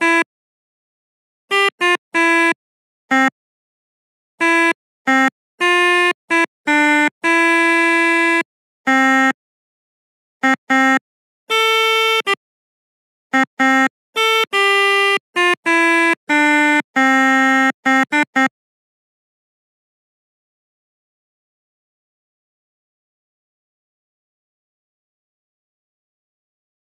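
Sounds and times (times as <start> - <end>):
melodica playing a tune: 0.0 - 0.3, 1.5 - 3.3, 4.4 - 9.4, 10.4 - 12.4, 13.3 - 18.5.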